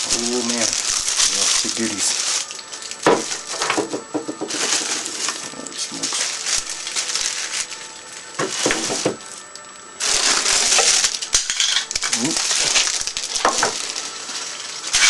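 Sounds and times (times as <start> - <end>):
packing material rustling: 0.0 - 15.0.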